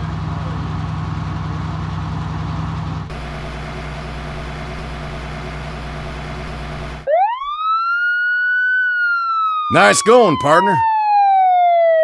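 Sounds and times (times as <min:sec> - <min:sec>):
vehicle engine idling: 0:00.1 - 0:07.1
siren wailing: 0:07.0 - 0:12.0.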